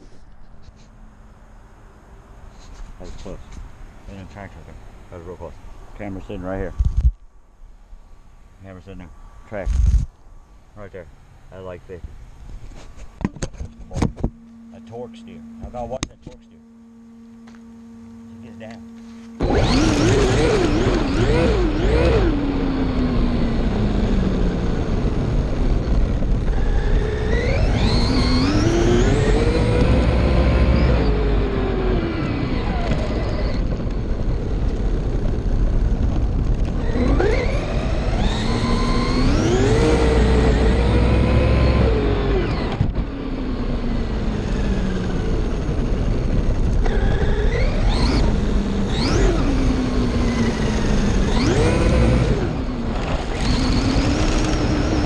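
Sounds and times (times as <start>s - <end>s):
electric motor whining: 13.2s - 55.0s.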